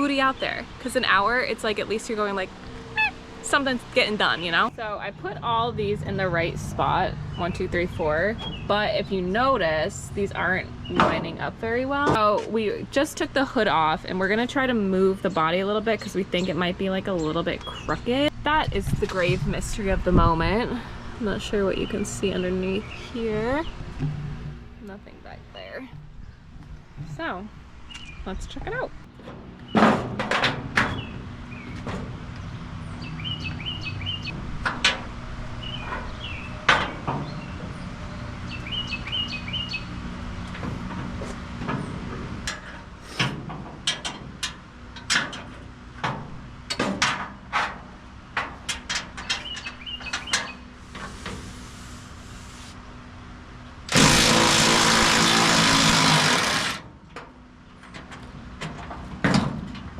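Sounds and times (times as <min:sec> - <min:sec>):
birds chirping: 0:00.0 - 0:13.2, 0:15.0 - 0:18.8, 0:21.0 - 0:30.0, 0:30.8 - 0:40.8, 0:49.1 - 0:50.9
low steady hum: 0:00.0 - 0:29.6.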